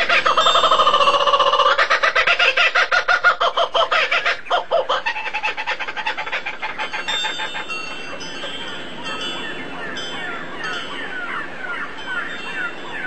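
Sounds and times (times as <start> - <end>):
bird clucking call: 0.0 - 8.6.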